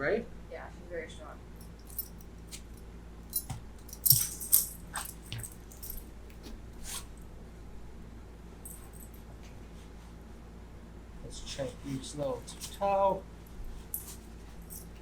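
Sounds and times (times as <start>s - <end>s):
metallic jingles: 1.6s - 6.2s, 8.6s - 9.2s, 13.8s - 15.0s
dog rustling: 1.6s - 7.2s, 11.6s - 15.0s.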